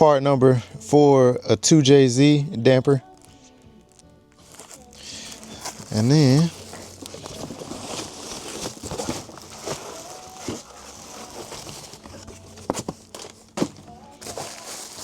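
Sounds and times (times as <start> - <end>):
packaging rustling and crinkling: 3.2 - 15.0.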